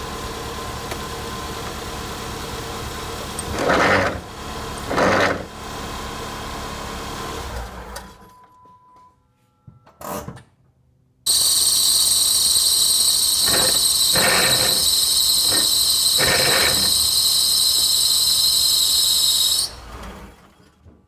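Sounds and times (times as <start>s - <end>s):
transmission grinding with squeal: 3.4s - 4.3s, 4.9s - 5.5s, 11.3s - 20.4s.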